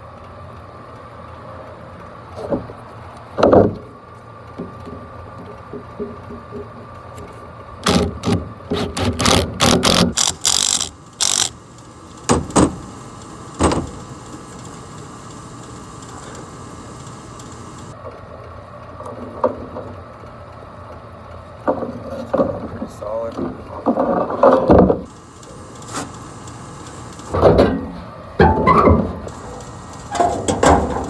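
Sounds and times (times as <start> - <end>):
hand tools clicking on metal: 9.6 - 17.9
steady hum: 9.7 - 18.0, 25.1 - 31.0.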